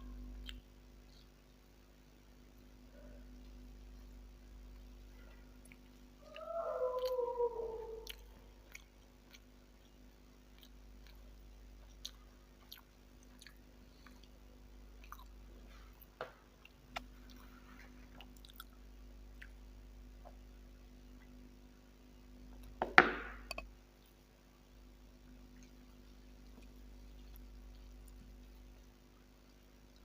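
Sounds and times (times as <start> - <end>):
close-miked chewing: 3.0 - 19.7, 25.2 - 30.0
gliding vocal cry: 6.2 - 8.4.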